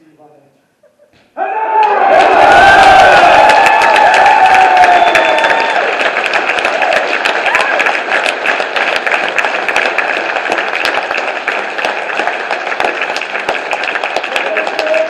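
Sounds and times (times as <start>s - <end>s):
audience applauding: 1.7s - 15.0s.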